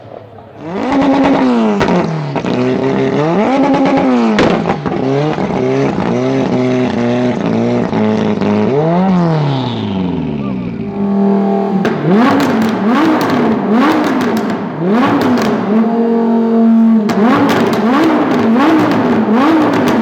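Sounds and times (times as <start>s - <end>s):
exhaust pops: 0.1s - 8.8s, 11.8s - 20.0s
car engine revving hard: 0.6s - 20.0s
loud backfire bang: 11.0s - 16.0s.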